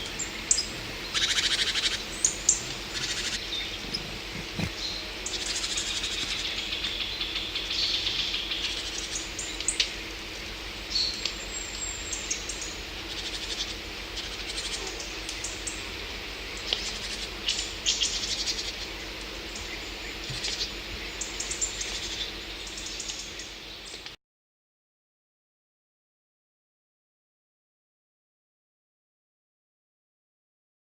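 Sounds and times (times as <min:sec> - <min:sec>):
songbirds chirping: 0:00.0 - 0:05.3
outdoor background noise: 0:00.0 - 0:24.2.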